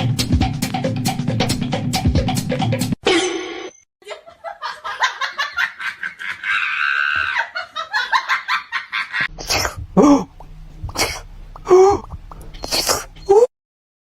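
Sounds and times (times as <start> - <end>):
people laughing: 4.0 - 9.3.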